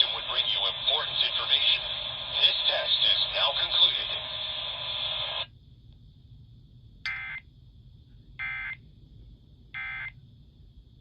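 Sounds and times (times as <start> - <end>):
faint high whine: 0.0 - 11.0.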